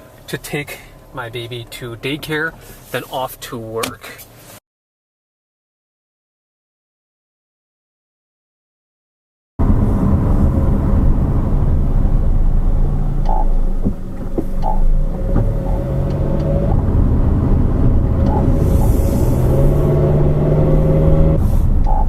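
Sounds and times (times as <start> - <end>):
car road and drivetrain rumble: 0.0 - 4.6, 9.6 - 22.0.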